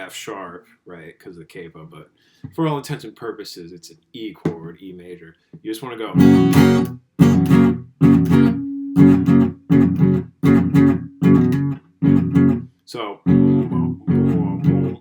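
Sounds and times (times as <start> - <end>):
acoustic guitar muted strums: 6.2 - 9.9.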